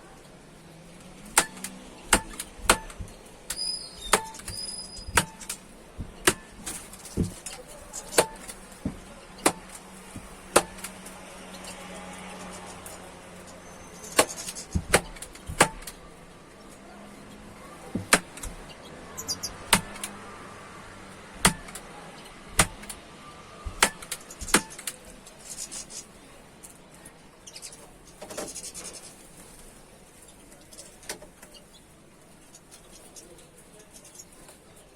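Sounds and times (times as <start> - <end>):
sharp taps and knocks: 1.0 - 11.2, 14.1 - 16.0, 17.9 - 18.8, 19.4 - 20.2, 21.4 - 21.9, 22.5 - 23.0, 23.6 - 25.1
high bird chirps: 3.1 - 5.6.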